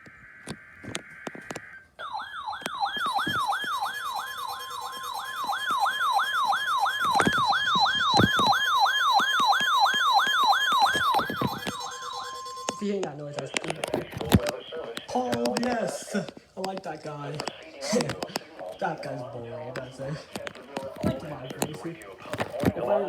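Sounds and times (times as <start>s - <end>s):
steady attention tone: 0.0s - 23.0s
siren whoop rising: 1.4s - 12.8s
warbling digital data burst: 10.0s - 14.0s.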